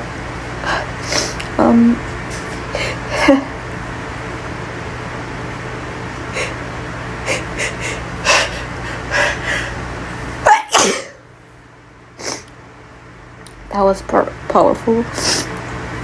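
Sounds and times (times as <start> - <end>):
steady low hum: 0.0 - 16.0
woman's catching breaths: 7.3 - 9.9
woman sneezing: 10.4 - 11.2.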